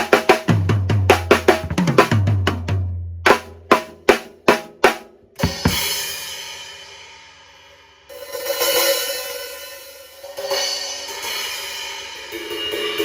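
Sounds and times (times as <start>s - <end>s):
drum strokes: 3.3s - 6.2s.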